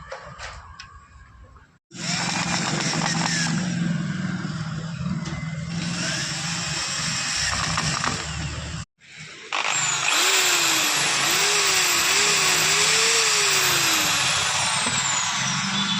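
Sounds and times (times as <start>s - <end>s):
power tool motor running: 1.9s - 4.0s, 5.7s - 8.8s, 9.5s - 15.9s.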